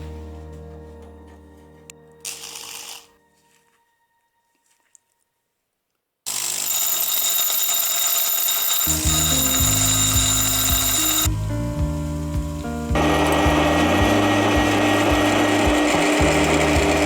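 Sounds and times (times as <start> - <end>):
background music with bass line: 0.0 - 2.2, 8.9 - 17.0
power tool whining: 2.2 - 3.1, 6.3 - 11.3, 13.0 - 17.0.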